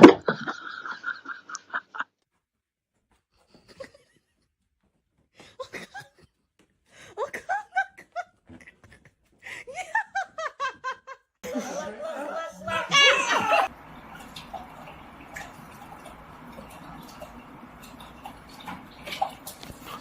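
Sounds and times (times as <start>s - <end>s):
person laughing: 7.2s - 13.7s.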